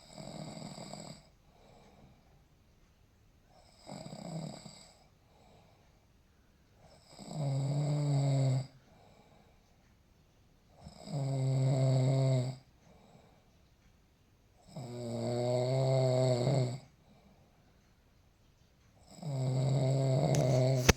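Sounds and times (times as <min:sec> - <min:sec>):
man snoring: 0:00.1 - 0:01.3, 0:03.7 - 0:05.0, 0:07.0 - 0:08.7, 0:10.9 - 0:12.6, 0:14.7 - 0:16.8, 0:19.2 - 0:20.9.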